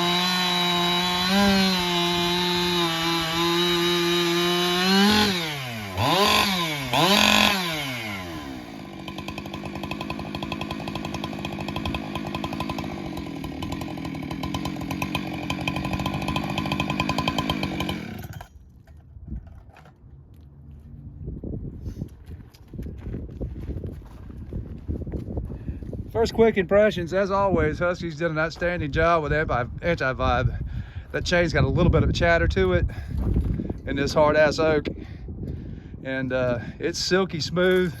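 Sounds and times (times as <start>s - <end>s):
chainsaw revving and idling: 0.0s - 18.5s.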